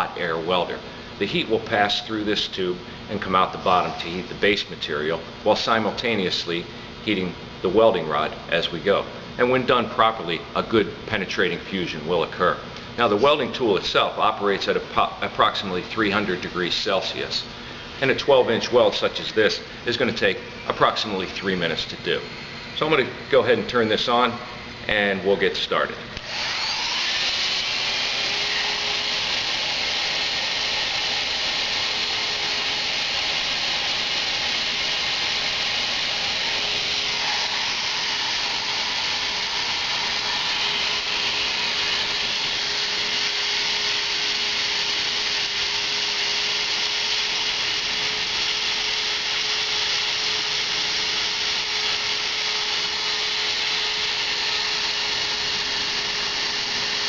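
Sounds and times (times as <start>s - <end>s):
steady hum: 0.1s - 46.2s
hot air welder blower running: 26.1s - 57.0s.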